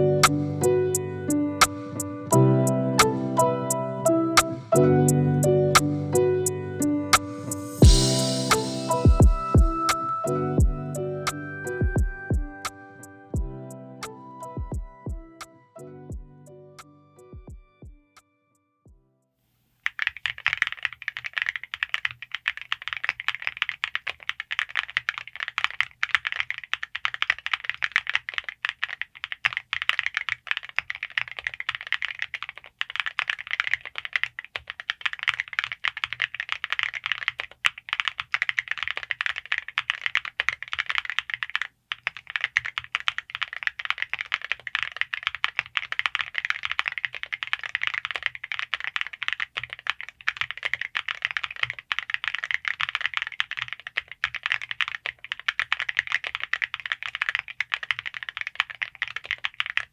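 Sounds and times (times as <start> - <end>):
mechanical keyboard typing: 19.8 - 59.9.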